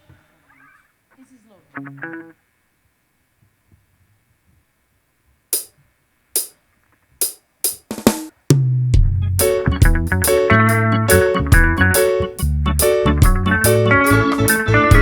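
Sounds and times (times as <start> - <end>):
drum fill: 7.2 - 15.0
sharp drum hits: 7.2 - 15.0
reggae band playing: 7.7 - 15.0.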